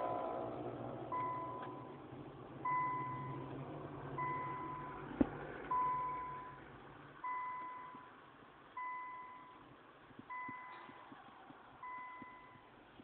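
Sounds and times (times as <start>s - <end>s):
car alarm beeping: 1.1s - 2.0s, 2.6s - 3.5s, 4.2s - 5.1s, 5.7s - 6.6s, 7.2s - 8.2s, 8.8s - 9.7s, 10.3s - 11.2s, 11.8s - 12.8s.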